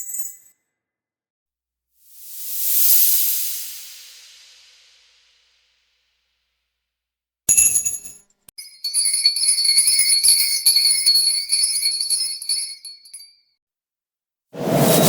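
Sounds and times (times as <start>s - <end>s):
sleigh bells jingling: 8.6s - 13.4s.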